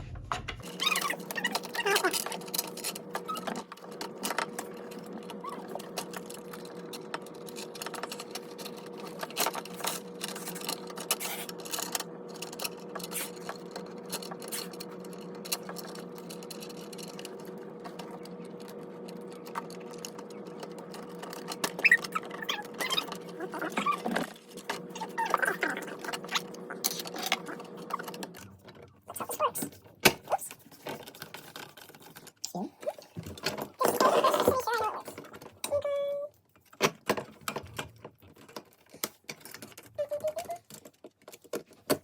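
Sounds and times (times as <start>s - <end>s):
small parts clicking and scraping: 0.6s - 42.0s.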